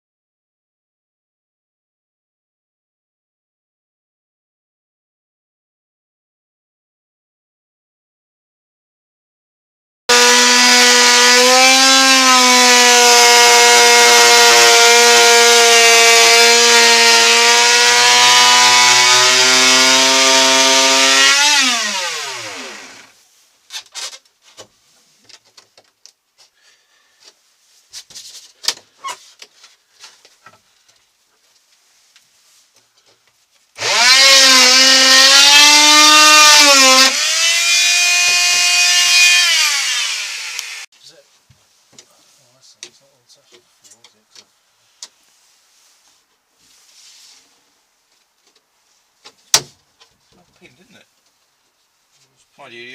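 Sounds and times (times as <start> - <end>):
power saw cutting with high whine: 10.1 - 23.1, 33.8 - 40.9.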